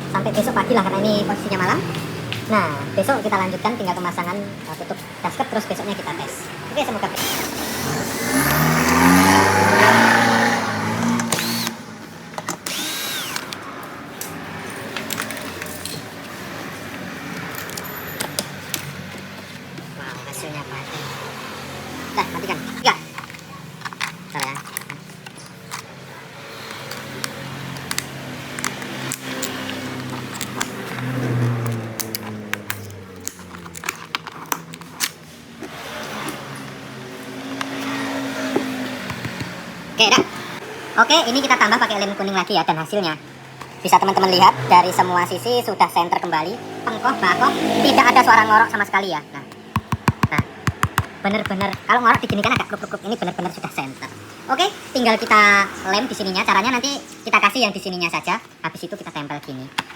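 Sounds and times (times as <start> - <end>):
vehicle engine passing by: 7.8 - 11.3, 46.2 - 49.8
sharp clicks and taps: 38.6 - 39.6, 49.5 - 52.8.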